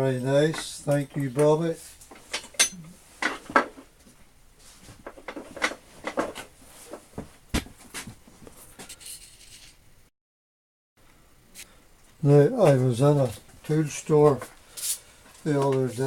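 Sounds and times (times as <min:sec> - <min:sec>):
metal tools clinking and knocking: 0:02.1 - 0:03.7.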